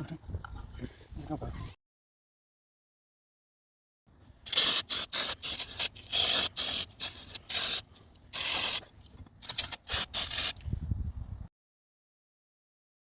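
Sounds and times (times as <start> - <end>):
aerosol spray hissing squirts: 4.5 - 10.6.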